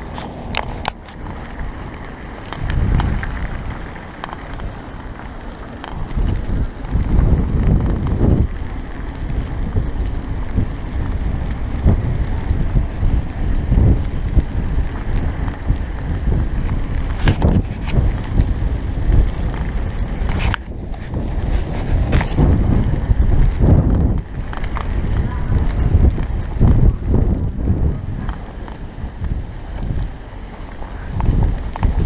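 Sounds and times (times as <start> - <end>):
bicycle riding through snow: 0.0 - 32.0
wind buffeting microphone: 0.0 - 32.0.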